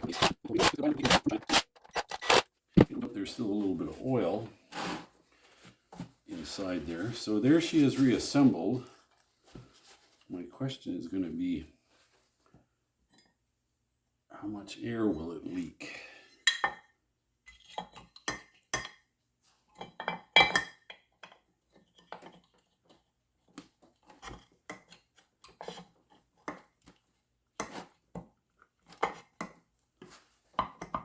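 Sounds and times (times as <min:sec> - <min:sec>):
metal parts and tools clinking: 0:00.0 - 0:02.9.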